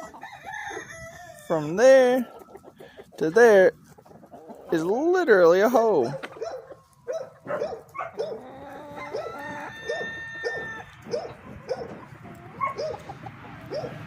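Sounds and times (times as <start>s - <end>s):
rooster crowing: 0.0s - 1.6s, 8.2s - 13.0s
chickens clucking: 0.0s - 14.0s.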